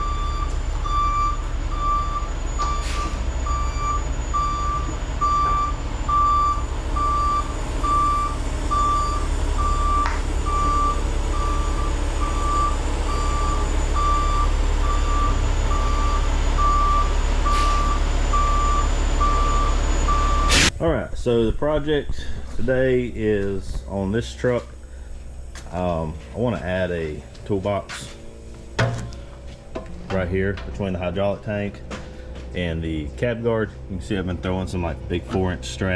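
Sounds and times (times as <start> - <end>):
truck backup alarm beeping: 0.0 - 20.7
engine rumble: 0.0 - 35.9.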